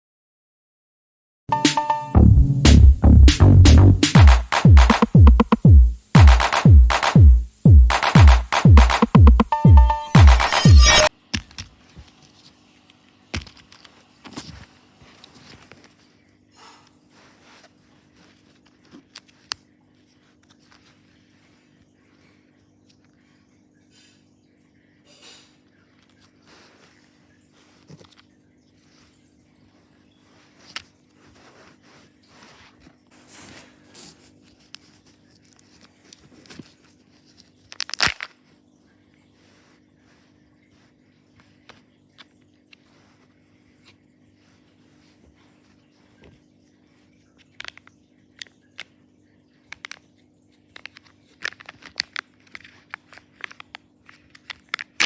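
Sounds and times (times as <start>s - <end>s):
electronic music: 1.5s - 11.1s
wrapper rustling and crinkling: 30.4s - 38.5s, 50.8s - 55.0s
foil wrapper tearing and crinkling: 37.5s - 38.4s.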